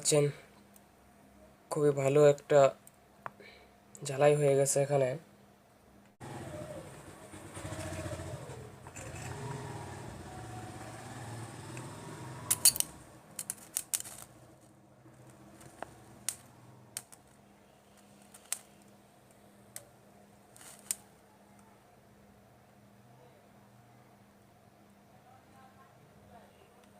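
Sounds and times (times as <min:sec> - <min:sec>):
vehicle engine running: 0:06.2 - 0:13.2
welding arc crackling snaps: 0:15.2 - 0:17.4, 0:18.0 - 0:18.9, 0:20.6 - 0:21.1.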